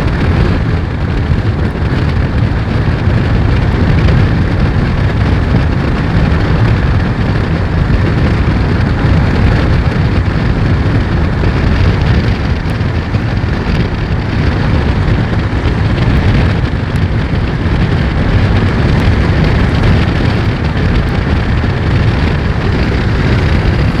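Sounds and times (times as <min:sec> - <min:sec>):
steady rain: 0:00.0 - 0:24.0
wind buffeting microphone: 0:00.0 - 0:24.0
raindrops ticking: 0:19.0 - 0:24.0.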